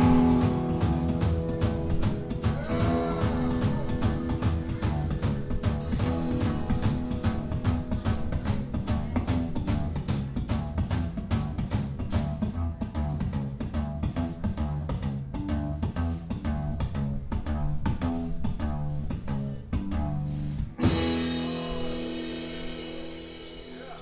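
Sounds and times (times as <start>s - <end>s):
live band playing: 0.0s - 12.6s, 20.7s - 24.0s.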